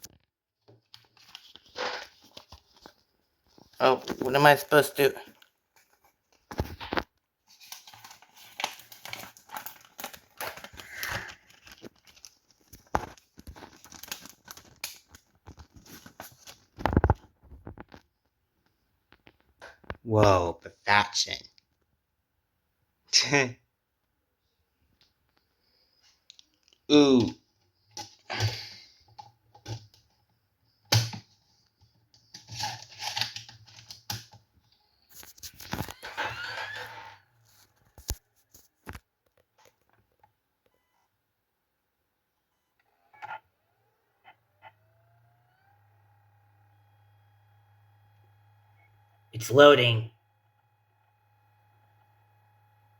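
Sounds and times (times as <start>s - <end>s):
plastic packaging crinkling: 5.3s - 18.0s.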